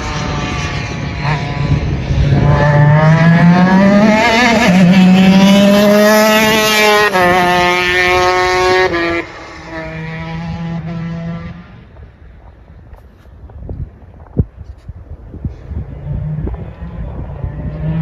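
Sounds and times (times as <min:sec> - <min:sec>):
two-stroke kart engine high revs: 0:00.0 - 0:11.6.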